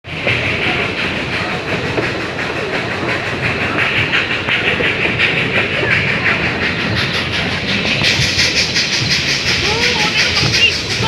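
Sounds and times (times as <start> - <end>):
steam train rattling on rails: 0.0 - 11.0.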